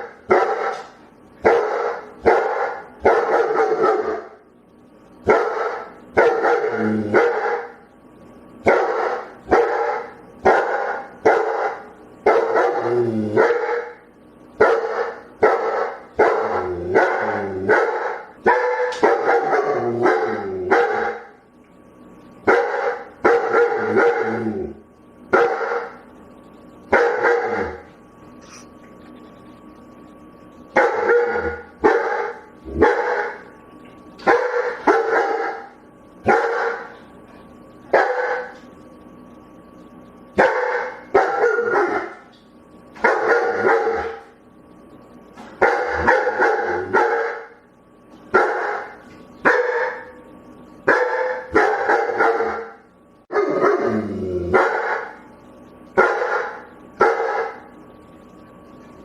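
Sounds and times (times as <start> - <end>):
dog barking: 0.3 - 4.3, 5.3 - 7.8, 8.6 - 14.0, 14.6 - 21.4, 22.5 - 24.3, 25.3 - 26.0, 26.9 - 27.8, 30.8 - 33.4, 34.2 - 35.7, 36.3 - 37.0, 37.9 - 38.6, 40.4 - 42.2, 43.0 - 44.3, 45.6 - 47.6, 48.3 - 50.2, 50.9 - 53.8, 54.5 - 55.2, 56.0 - 57.7.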